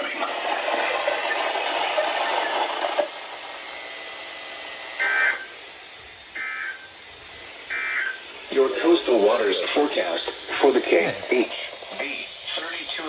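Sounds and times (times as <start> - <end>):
radio static hiss: 7.7 - 13.0.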